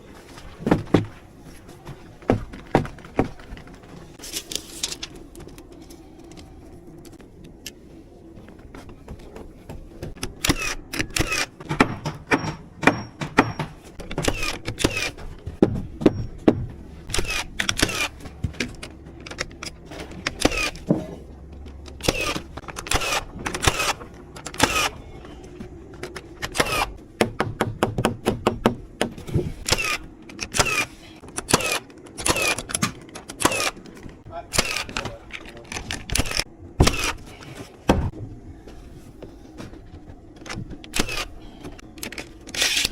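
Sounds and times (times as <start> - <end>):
hammering nails into wood: 10.2 - 18.0, 26.4 - 33.7.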